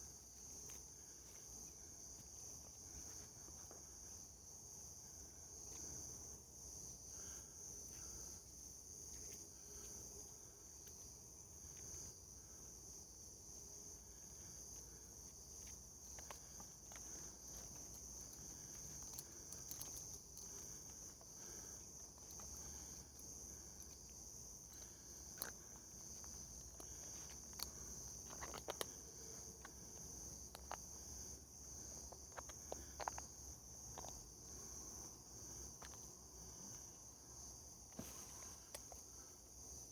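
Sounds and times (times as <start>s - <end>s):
high-pitched insect chorus: 0.0s - 39.9s
small clicks and rustles: 14.2s - 37.1s, 37.8s - 39.9s.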